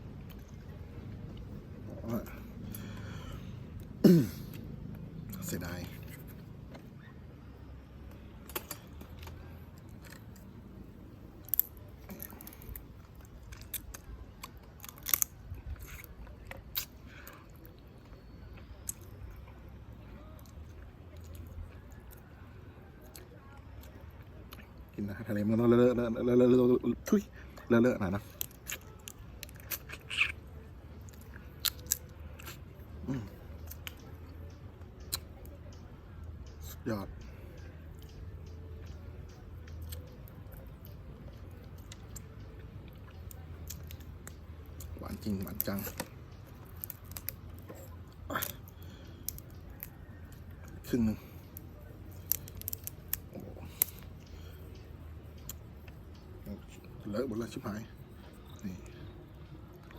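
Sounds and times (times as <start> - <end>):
crab shell cracking: 11.4 - 17.4, 28.3 - 30.4, 31.1 - 32.6, 43.0 - 55.9
person chewing: 11.4 - 19.7, 28.3 - 34.0, 39.6 - 56.2.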